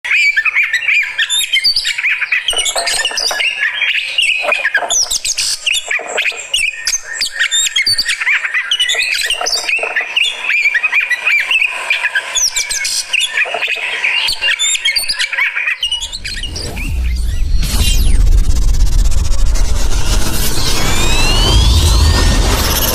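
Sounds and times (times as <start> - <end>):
low rumbling: 16.1 - 22.9.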